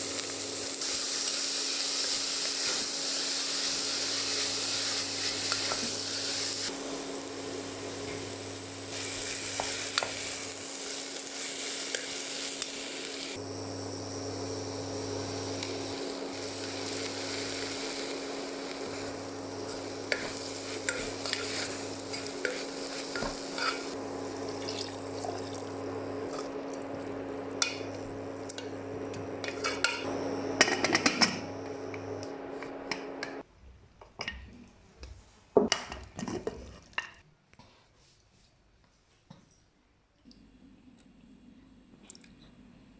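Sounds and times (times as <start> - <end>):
soup sizzling and bubbling: 0.0 - 33.4.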